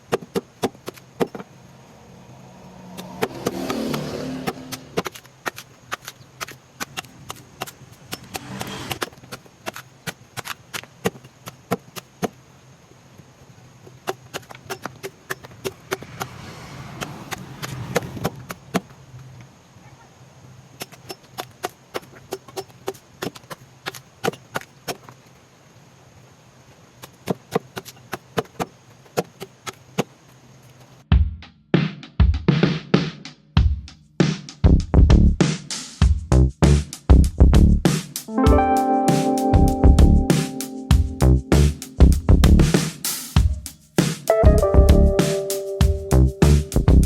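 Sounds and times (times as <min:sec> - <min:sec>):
low rumble: 0:41.2 - 0:42.7.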